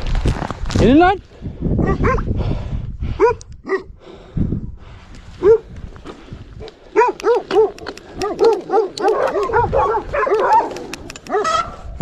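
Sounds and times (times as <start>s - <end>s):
dogs barking: 1.8s - 2.3s, 3.2s - 3.9s, 5.4s - 5.7s, 6.6s - 11.8s.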